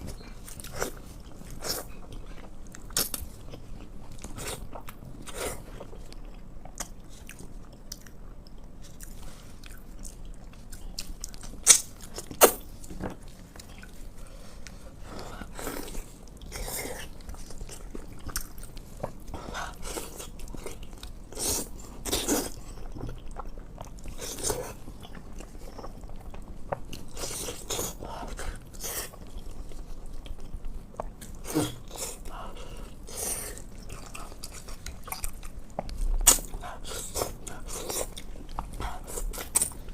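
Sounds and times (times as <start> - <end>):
wet chewing and smacking: 15.4 - 39.9.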